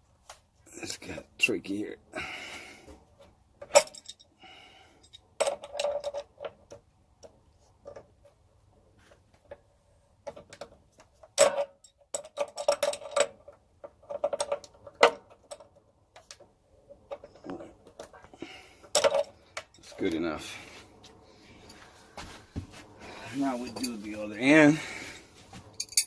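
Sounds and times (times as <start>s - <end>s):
wrenches clinking on metal fitting: 3.6s - 4.3s, 5.0s - 6.6s, 11.3s - 15.8s, 17.1s - 20.2s, 23.4s - 24.8s, 25.8s - 26.0s.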